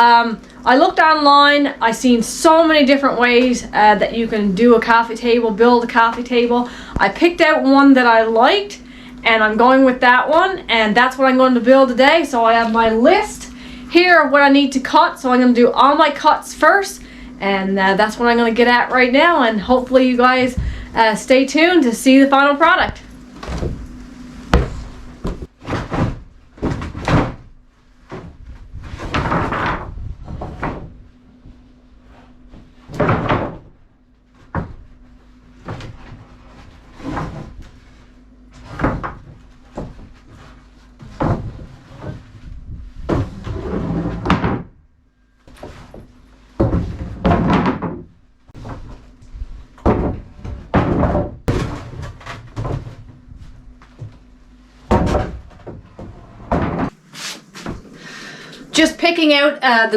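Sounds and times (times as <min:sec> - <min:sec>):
boards sliding scrapes: 0:56.8 - 0:59.5.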